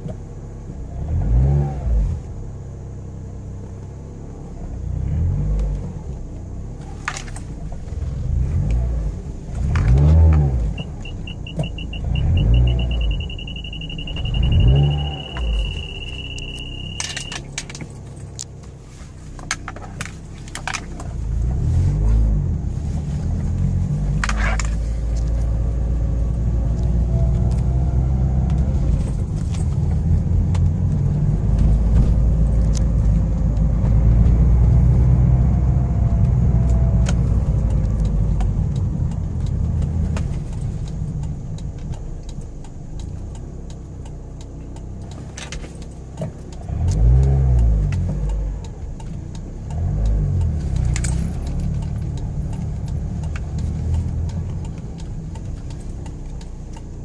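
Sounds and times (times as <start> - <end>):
car engine running: 0.0 - 57.0
road rumble inside car: 0.0 - 57.0
small clicks and rattles: 36.2 - 57.0.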